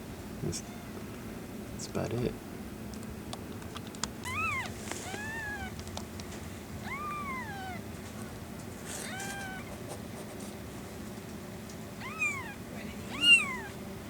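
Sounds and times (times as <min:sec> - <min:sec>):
kittens mewing: 0:04.2 - 0:05.9, 0:06.8 - 0:09.9, 0:12.0 - 0:13.8.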